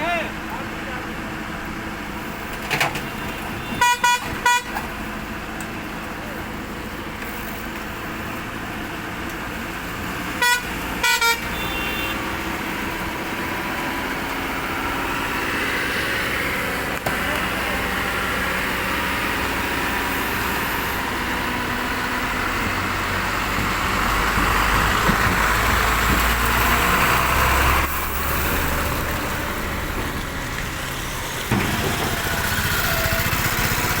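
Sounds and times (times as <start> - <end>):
excavator diesel engine running: 0.0 - 34.0
short horn toots: 3.6 - 4.8, 10.4 - 12.2.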